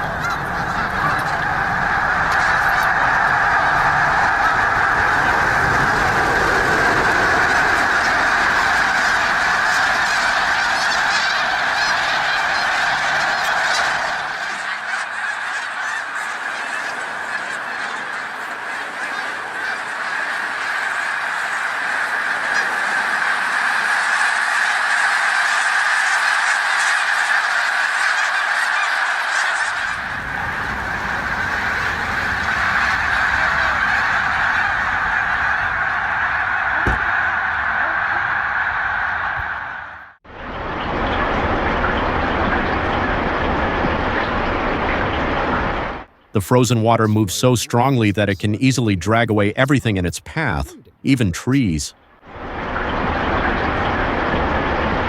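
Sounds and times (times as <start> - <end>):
flock of birds calling: 0.0 - 40.2.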